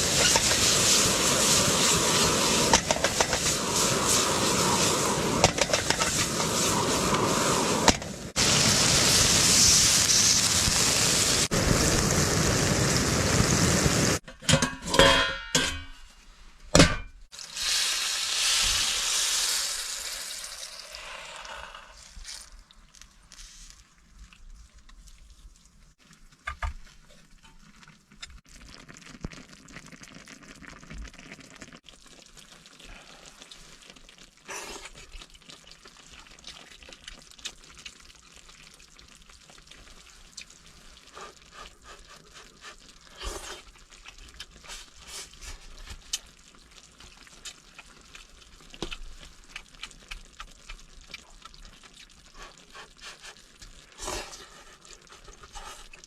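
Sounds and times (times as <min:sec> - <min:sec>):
meat sizzling in a pan: 0:00.0 - 0:14.2, 0:17.3 - 0:22.5
stirring clicks and scrapes: 0:02.7 - 0:04.2, 0:05.4 - 0:07.2, 0:40.4 - 0:46.3, 0:47.0 - 0:56.0.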